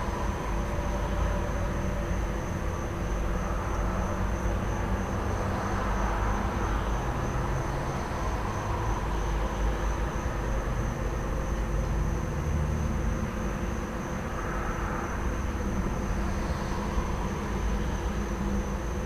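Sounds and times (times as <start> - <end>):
traffic noise: 0.0 - 19.0.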